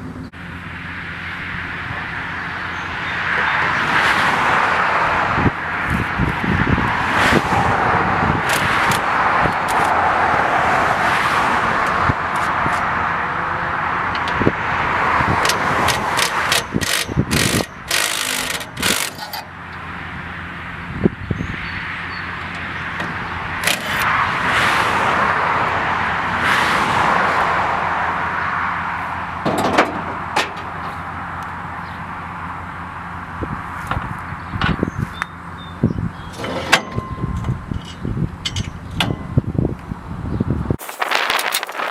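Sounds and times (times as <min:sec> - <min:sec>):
truck engine under load: 0:00.0 - 0:24.2, 0:27.4 - 0:41.9
sharp clicks and knocks: 0:15.4 - 0:19.5, 0:22.5 - 0:24.0
tool scraping through ground: 0:40.8 - 0:41.9.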